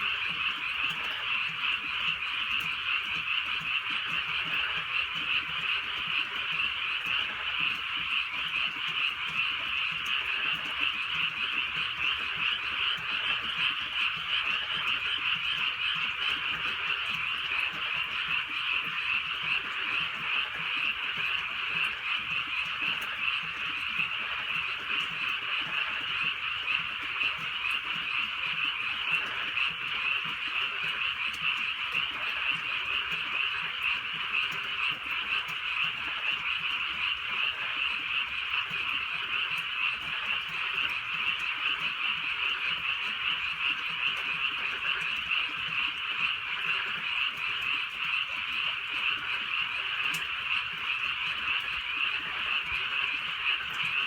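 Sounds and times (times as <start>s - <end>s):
frogs calling: 0.0s - 54.0s.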